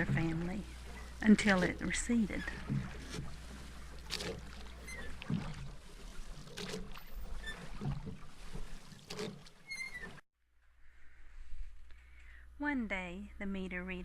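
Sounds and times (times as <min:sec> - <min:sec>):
oars splashing in water: 0:00.0 - 0:10.2.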